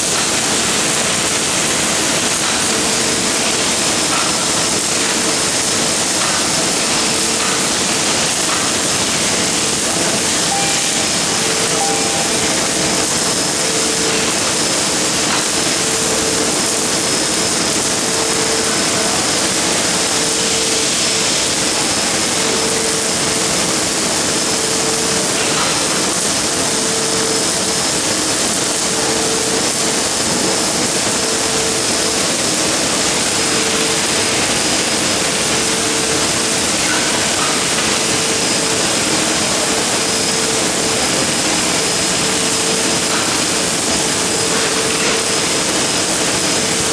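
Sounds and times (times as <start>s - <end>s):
machine hum: 0.0s - 21.0s
welding arc hissing and crackling: 0.0s - 46.9s.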